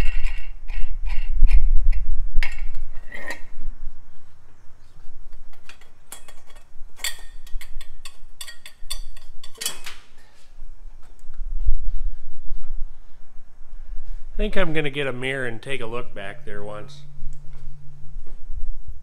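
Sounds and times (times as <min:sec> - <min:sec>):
metal tools clinking and knocking: 0:05.5 - 0:09.9
low rumble: 0:11.3 - 0:19.0.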